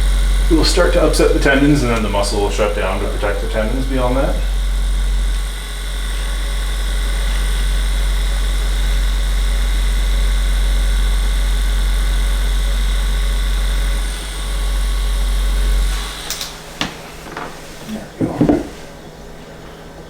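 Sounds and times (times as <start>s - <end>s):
massager buzzing hum: 0.0s - 20.0s.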